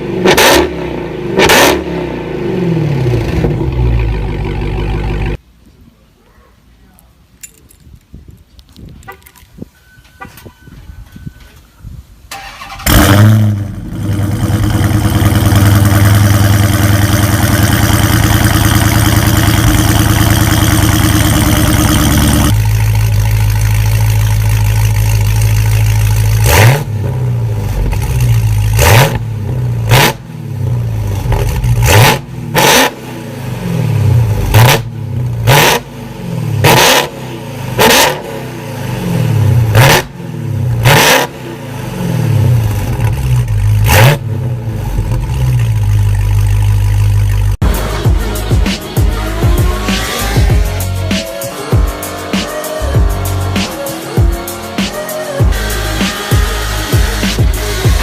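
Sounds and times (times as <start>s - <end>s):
engine revving: 0.0s - 5.4s, 12.4s - 58.0s
car engine idling: 2.9s - 5.4s, 13.7s - 32.4s, 41.5s - 54.4s
car engine cranking and starting: 12.3s - 33.0s, 37.7s - 48.3s.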